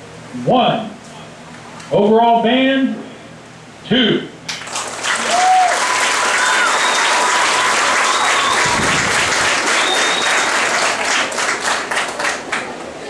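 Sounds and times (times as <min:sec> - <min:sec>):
audience applauding: 0:04.5 - 0:13.0.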